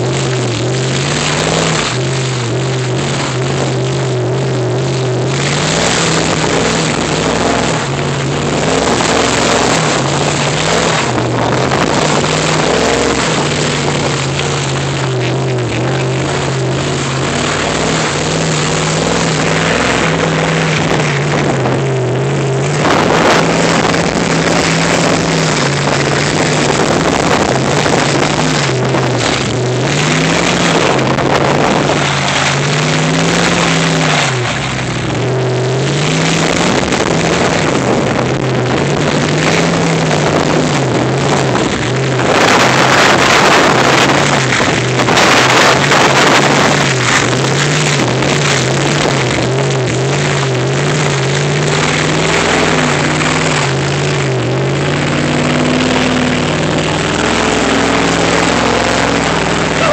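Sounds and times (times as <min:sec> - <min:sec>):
rough-ground noise: 0:00.0 - 0:59.9
vehicle engine revving off-road: 0:00.0 - 0:59.9.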